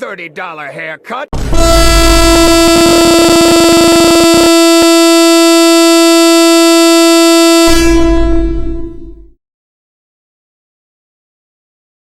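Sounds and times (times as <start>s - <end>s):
distorted electronic horn tone: 1.5s - 9.4s
distorted low rumble: 7.8s - 9.4s.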